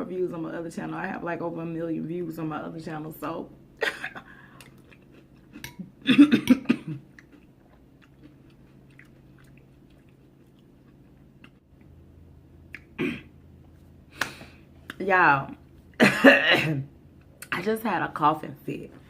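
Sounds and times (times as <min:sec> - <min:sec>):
woman coughing: 0:03.8 - 0:04.5, 0:06.0 - 0:07.0, 0:13.0 - 0:13.3, 0:16.0 - 0:16.9.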